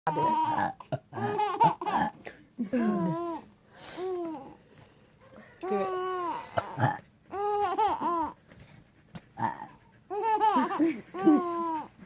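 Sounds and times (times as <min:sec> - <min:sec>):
baby laughing: 0:00.1 - 0:02.2, 0:05.9 - 0:08.4, 0:09.4 - 0:11.9.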